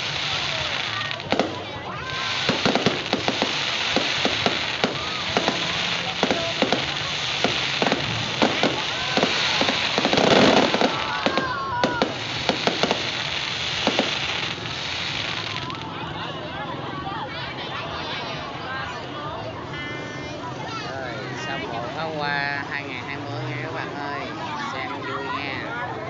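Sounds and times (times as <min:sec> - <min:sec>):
fireworks sharp bangs: 0:00.0 - 0:15.9
fireworks crackling and popping: 0:00.0 - 0:16.1.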